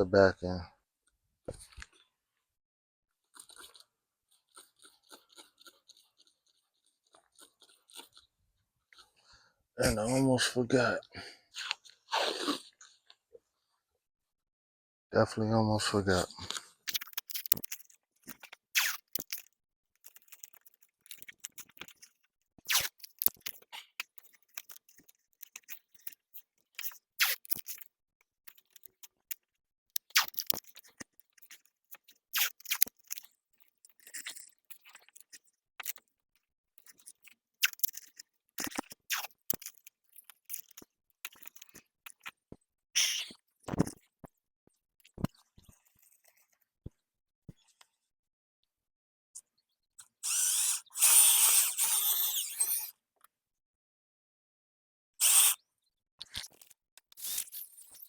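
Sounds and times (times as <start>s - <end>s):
handling crinkles and clicks: 16.8s - 36.2s, 36.8s - 42.4s.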